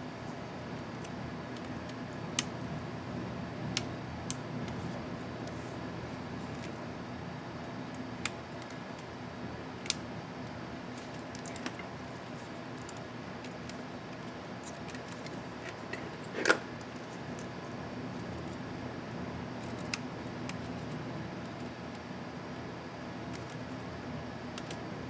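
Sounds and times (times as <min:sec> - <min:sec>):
small plastic clicks: 0:24.6 - 0:24.8.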